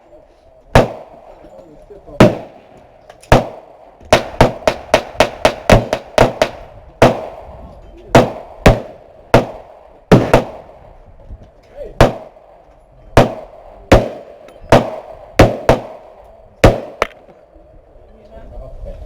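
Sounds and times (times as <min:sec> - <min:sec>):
gunshots with echo: 0:00.7 - 0:01.5, 0:02.1 - 0:11.0, 0:12.0 - 0:17.3.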